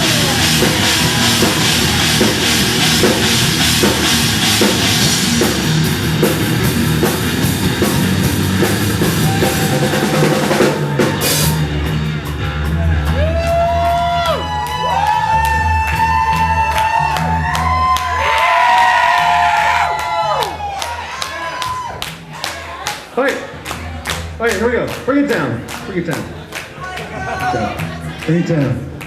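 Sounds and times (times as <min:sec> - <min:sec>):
live rock band playing: 0:00.0 - 0:20.6
heavy drum kit: 0:00.0 - 0:23.1
bass guitar: 0:00.0 - 0:29.0.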